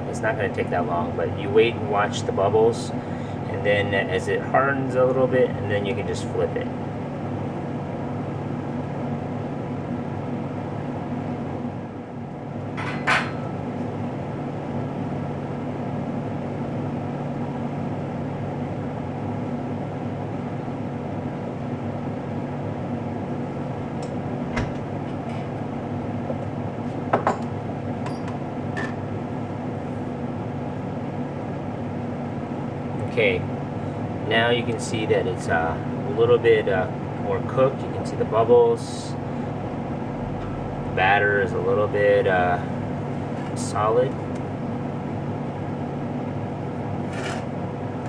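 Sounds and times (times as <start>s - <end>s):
steady low hum: 0.0s - 48.0s
dishes clinking: 12.8s - 13.6s.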